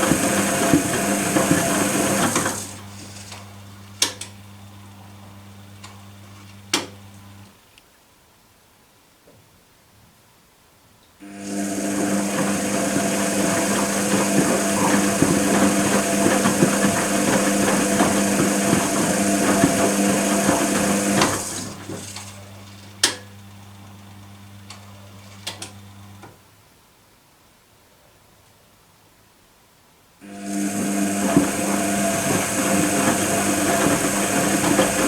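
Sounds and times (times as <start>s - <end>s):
washing machine rattle: 0.0s - 3.0s, 11.5s - 22.4s, 30.4s - 35.0s
washing machine hum: 0.0s - 7.5s, 11.2s - 26.3s, 30.2s - 35.0s.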